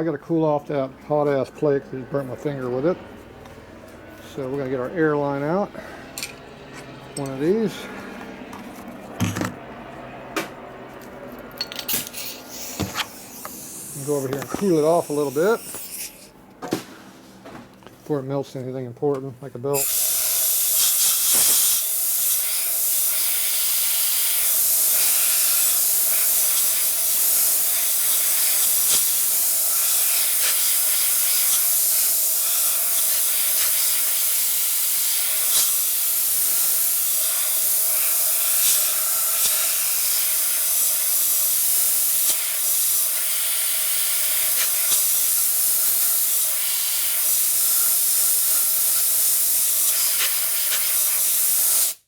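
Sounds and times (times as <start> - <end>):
compressed air hissing: 11.9 - 16.3, 19.8 - 52.0.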